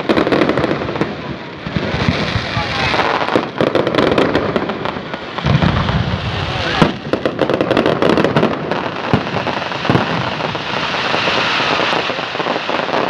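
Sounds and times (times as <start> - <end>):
fireworks bangs: 0.0 - 13.0
fireworks crackling: 0.0 - 13.0.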